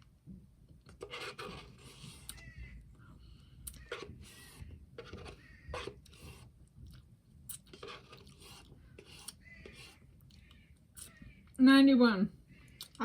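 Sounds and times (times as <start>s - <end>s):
chewing and smacking: 6.6s - 8.7s.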